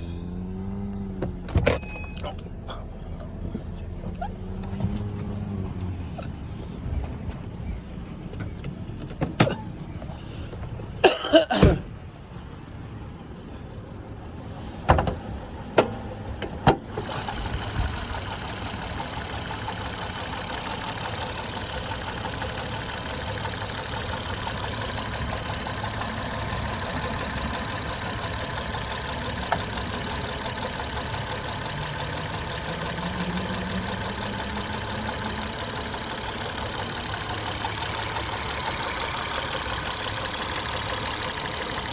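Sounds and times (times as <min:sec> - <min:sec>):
car engine idling: 0:00.9 - 0:41.9.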